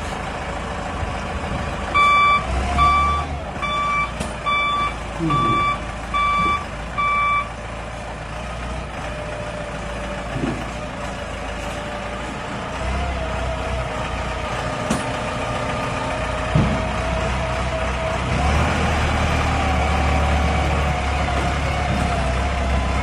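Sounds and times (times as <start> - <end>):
diesel engine running: 0.0 - 23.0
reversing alarm beeps: 2.0 - 7.5.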